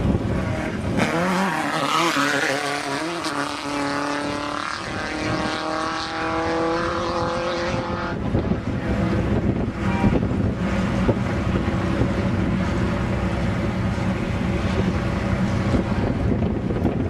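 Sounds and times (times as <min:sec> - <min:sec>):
wind buffeting microphone: 0:00.0 - 0:17.0
vehicle engine running under load: 0:06.2 - 0:17.0.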